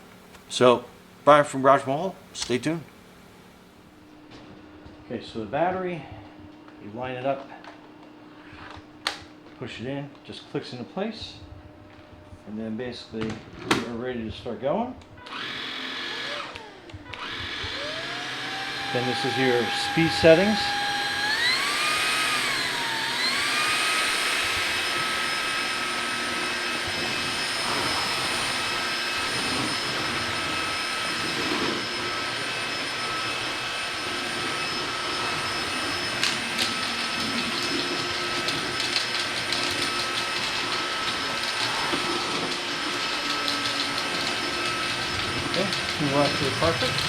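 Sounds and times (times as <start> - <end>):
vacuum cleaner motor whining: 1.9 - 47.0.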